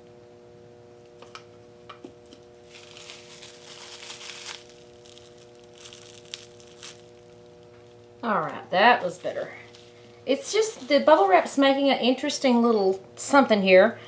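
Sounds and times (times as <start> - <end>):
steady background hum: 0.0 - 14.0
bubble wrap crinkling: 2.6 - 11.7.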